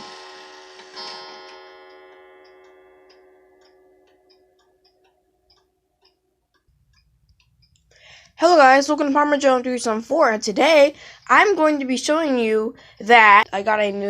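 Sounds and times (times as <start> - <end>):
clock gong strike ringing: 0.0 - 5.1
clock ticking: 0.0 - 14.0.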